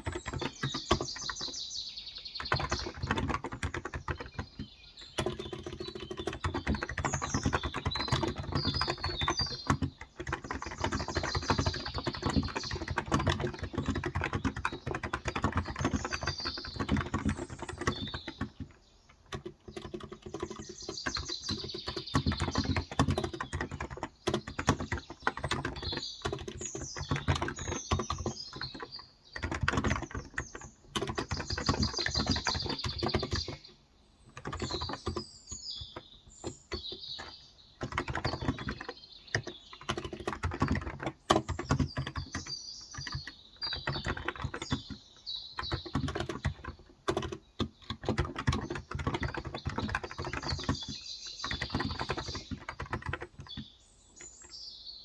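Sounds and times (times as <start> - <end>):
keyboard typing: 0.0 - 33.7, 34.3 - 54.5
birds chirping: 0.0 - 55.0.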